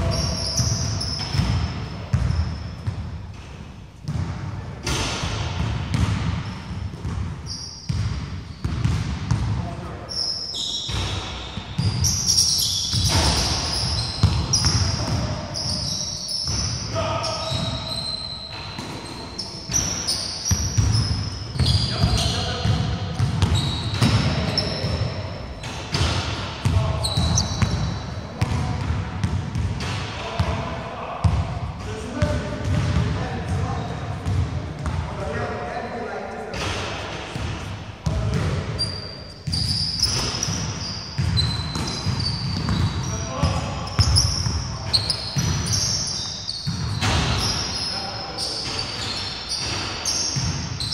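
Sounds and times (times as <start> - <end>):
sneakers squeaking: 0.0 - 30.6, 31.2 - 35.0, 36.4 - 50.9
players' voices: 12.0 - 40.6, 41.4 - 49.8
basketball bouncing on wooden floor: 21.6 - 24.4, 39.5 - 43.1.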